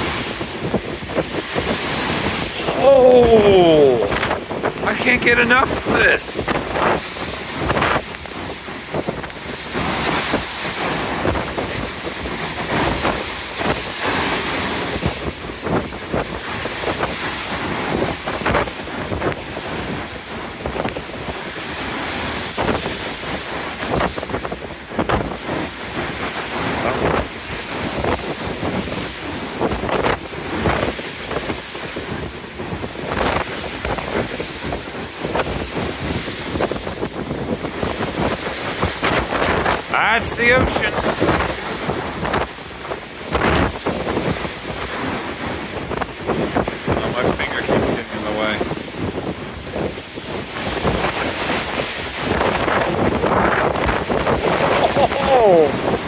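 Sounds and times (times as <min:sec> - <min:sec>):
ocean waves rushing: 0:00.0 - 0:56.0
wind buffeting microphone: 0:00.0 - 0:56.0.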